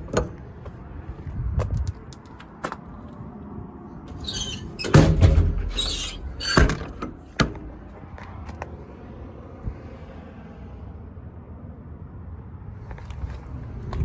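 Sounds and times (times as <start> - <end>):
latch clicks: 4.1 - 7.8
metal door sliding: 4.1 - 7.9
metal doors banging: 4.1 - 7.9.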